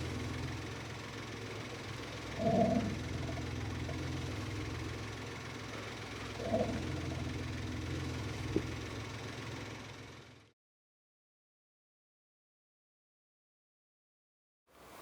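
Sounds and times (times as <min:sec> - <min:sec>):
car engine idling: 0:00.0 - 0:10.4.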